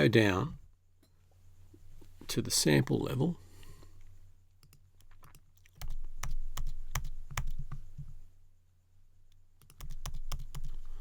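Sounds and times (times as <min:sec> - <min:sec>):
electrical hum: 0:00.0 - 0:11.0
computer keyboard typing: 0:04.6 - 0:08.1, 0:09.6 - 0:10.9.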